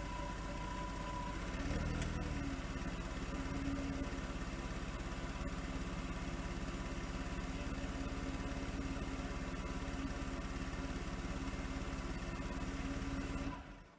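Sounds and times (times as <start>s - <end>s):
engine whine: 0.0s - 4.4s
car engine running: 0.0s - 13.9s.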